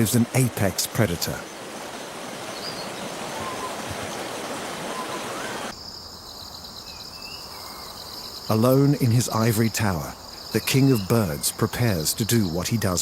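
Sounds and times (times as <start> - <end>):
rushing water: 0.0 - 5.8
faint bird calls: 2.5 - 5.7
insect chirring: 5.7 - 13.0.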